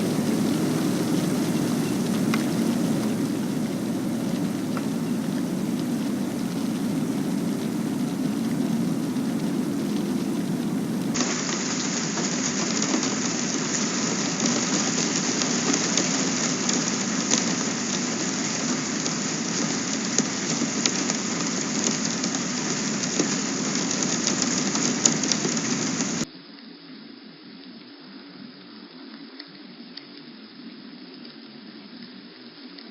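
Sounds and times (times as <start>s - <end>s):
steady rain falling: 0.0s - 26.3s.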